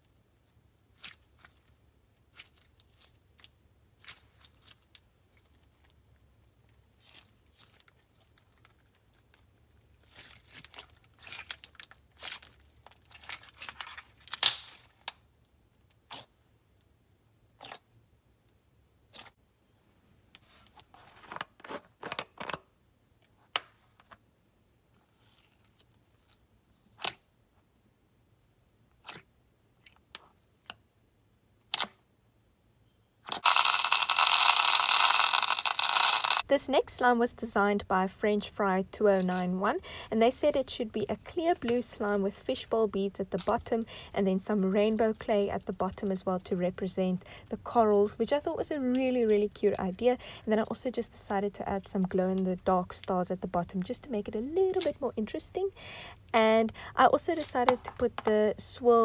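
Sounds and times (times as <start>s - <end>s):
clicks and pops of foam beads: 14.3s - 15.2s, 33.3s - 36.4s.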